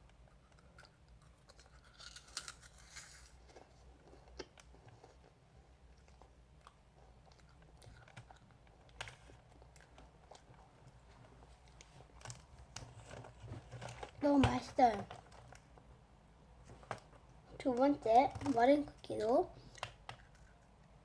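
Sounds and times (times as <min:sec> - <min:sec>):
person chewing crisp cookie: 0:00.0 - 0:12.4, 0:19.6 - 0:21.0
cookie crunching and crackling: 0:00.0 - 0:15.7.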